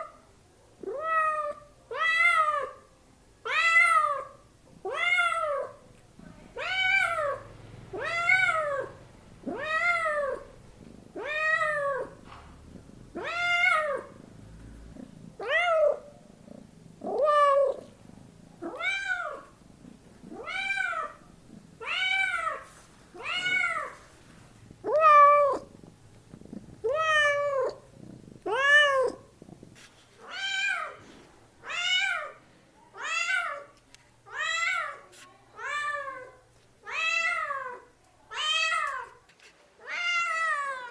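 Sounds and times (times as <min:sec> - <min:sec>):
cat meowing: 0:06.6 - 0:14.2, 0:15.4 - 0:18.0, 0:18.6 - 0:19.6, 0:20.2 - 0:24.0, 0:24.8 - 0:31.0.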